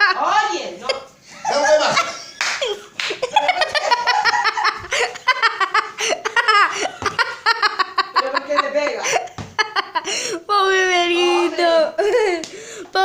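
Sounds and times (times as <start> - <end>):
people laughing hard: 1.3 - 10.2.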